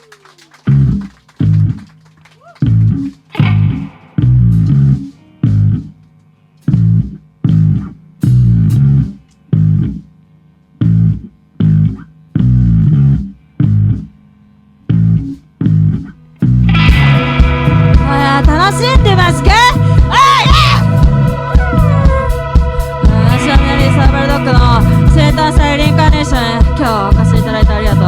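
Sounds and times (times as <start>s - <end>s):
rock band stop-start hits: 3.0s - 9.5s, 16.4s - 28.0s.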